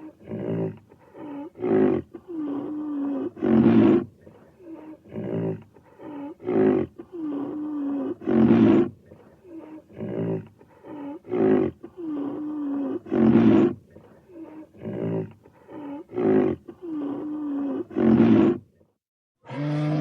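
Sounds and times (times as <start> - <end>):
rhino roars: 9.9 - 18.6, 19.4 - 20.0.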